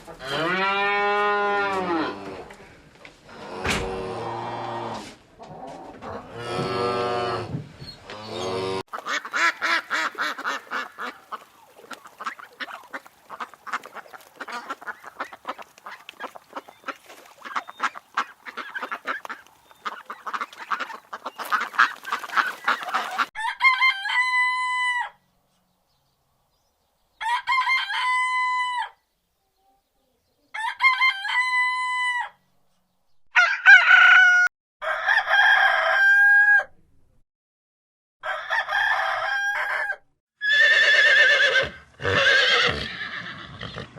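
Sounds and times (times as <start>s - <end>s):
cow mooing: 0.2s - 2.5s, 6.2s - 7.5s
chickens clucking and cackling: 5.4s - 25.1s
rooster crowing: 23.4s - 25.2s, 27.2s - 29.0s, 30.6s - 32.4s, 33.4s - 36.7s, 38.2s - 40.0s.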